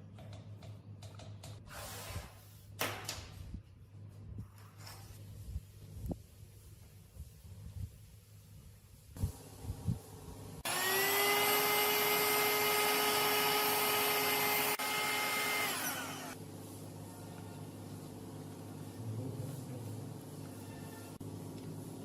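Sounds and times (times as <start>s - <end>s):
electric motor whining: 10.6s - 16.4s.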